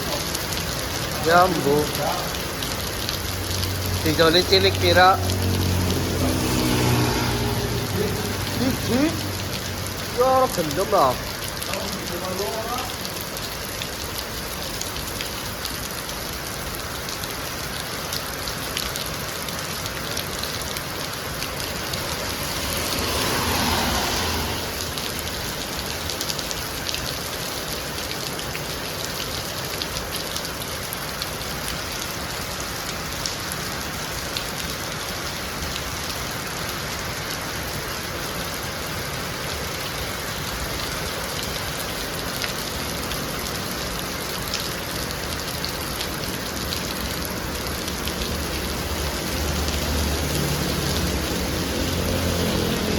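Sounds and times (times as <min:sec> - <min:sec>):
heavy rain falling: 0:00.0 - 0:52.9
rushing noise: 0:21.7 - 0:25.3.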